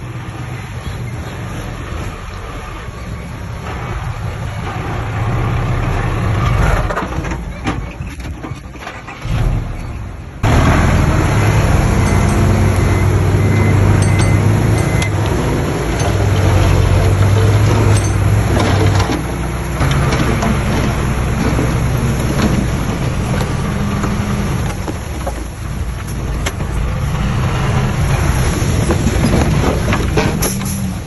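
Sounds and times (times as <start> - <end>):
diesel engine of heavy machine: 0.0 - 31.0
knocks and clanks: 6.3 - 31.0.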